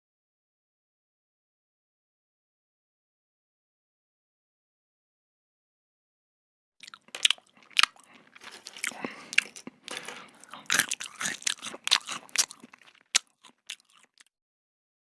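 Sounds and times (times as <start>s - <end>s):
person chewing crunchy food: 6.8s - 14.3s.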